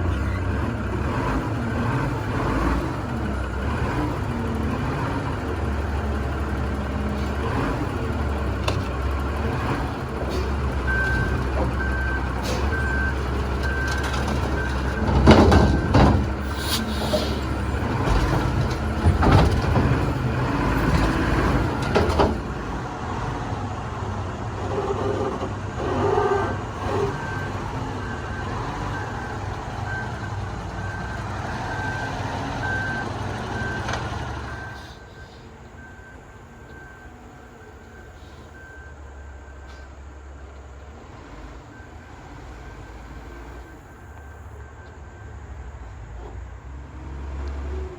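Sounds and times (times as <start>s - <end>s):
heavy diesel vehicle running: 0.0s - 47.9s
reversing alarm beeping: 9.9s - 19.2s, 26.1s - 40.5s.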